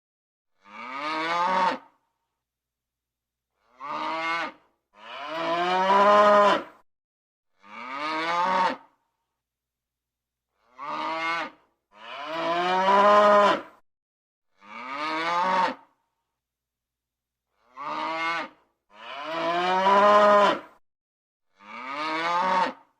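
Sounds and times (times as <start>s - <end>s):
cow mooing: 0.6s - 1.8s, 3.8s - 6.8s, 7.6s - 8.8s, 10.8s - 13.7s, 14.6s - 15.8s, 17.7s - 20.8s, 21.6s - 22.8s.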